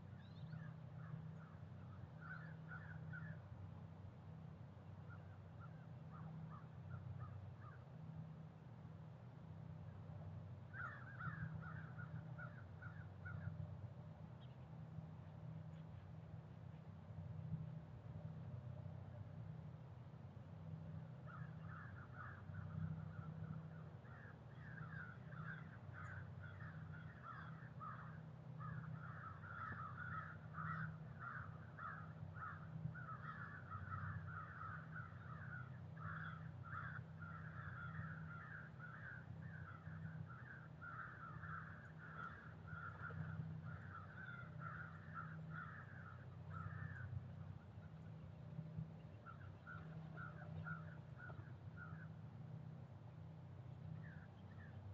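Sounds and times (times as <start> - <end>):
steady low hum: 0.0 - 54.9
raspy crow-like calls: 2.2 - 3.4, 10.7 - 13.6, 21.2 - 47.3, 49.2 - 52.2.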